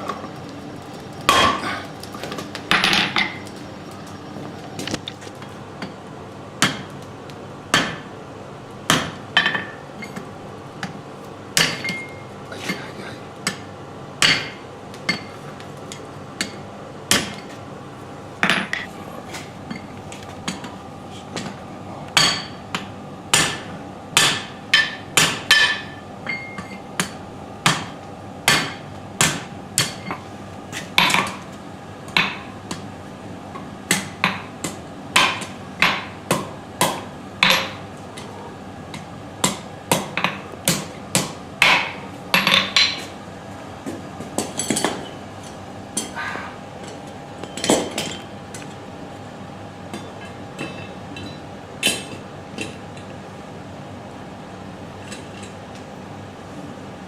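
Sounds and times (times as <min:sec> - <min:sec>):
hammer striking metal: 0:23.3 - 0:27.9.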